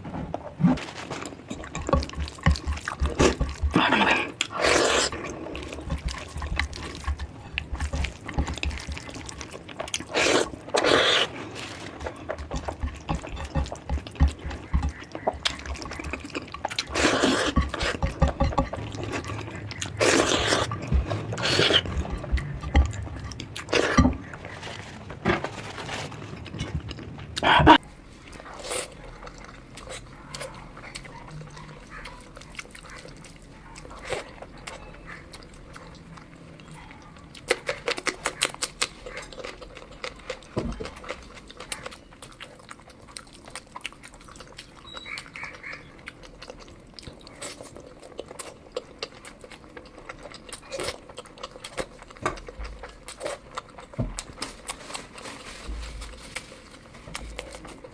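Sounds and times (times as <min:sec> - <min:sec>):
person chewing and smacking lips: 0:00.8 - 0:25.2, 0:26.1 - 0:57.9.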